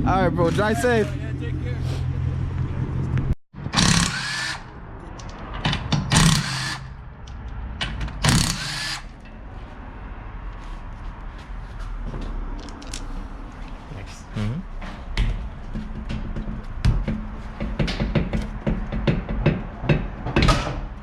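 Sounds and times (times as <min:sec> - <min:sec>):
power tool bursts: 0:03.7 - 0:04.7, 0:06.1 - 0:06.9, 0:08.2 - 0:09.1.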